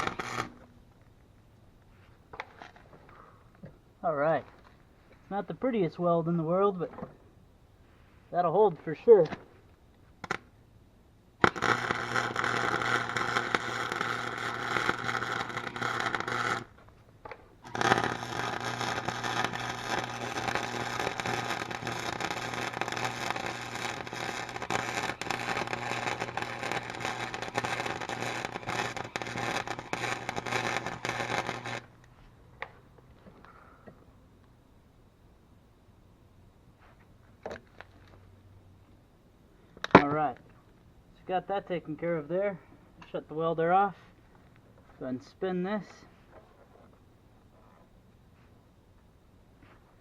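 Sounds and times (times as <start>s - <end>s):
arc welder crackling: 0.0s - 1.2s, 8.6s - 10.5s, 11.4s - 32.7s
low welder hum: 0.0s - 3.4s, 7.9s - 10.6s, 11.2s - 33.6s.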